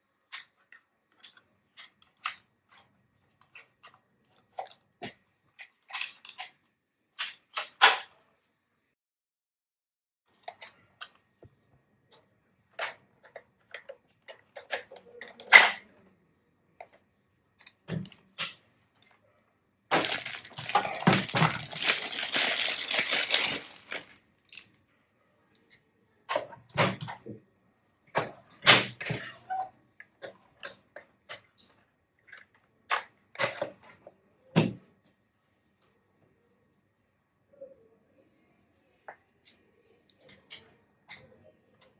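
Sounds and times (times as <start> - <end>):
packaging crackle: 19.9 - 24.6
toy packaging clicks and knocks: 19.9 - 24.7.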